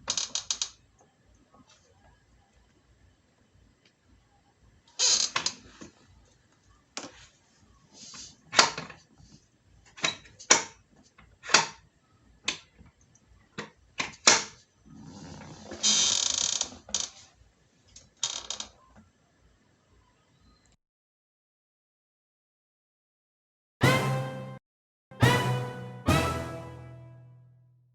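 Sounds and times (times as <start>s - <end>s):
chair creaking and clicking: 0.0s - 0.8s, 5.0s - 6.0s, 15.2s - 17.3s, 18.0s - 18.8s.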